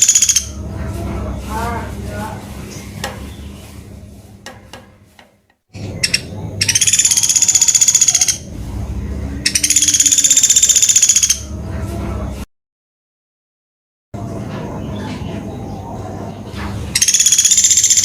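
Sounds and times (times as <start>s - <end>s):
woodpecker rattling trills: 0.0s - 0.6s, 6.0s - 8.5s, 9.5s - 11.4s, 17.0s - 18.0s.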